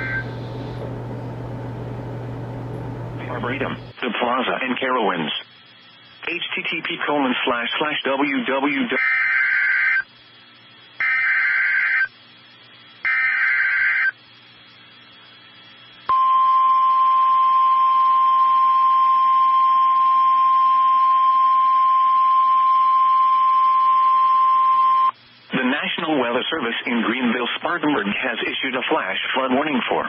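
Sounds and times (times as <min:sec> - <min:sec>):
steady warning alarm tone: 0:00.0 - 0:00.6, 0:09.0 - 0:10.1, 0:11.0 - 0:12.2, 0:13.0 - 0:14.2.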